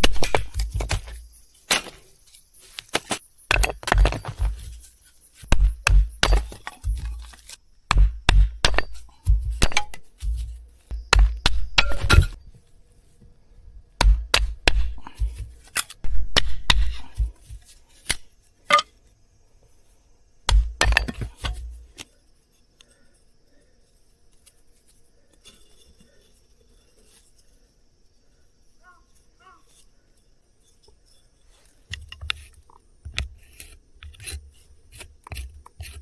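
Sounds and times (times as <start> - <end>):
firewood being split: 0.0 - 2.1, 2.8 - 12.4.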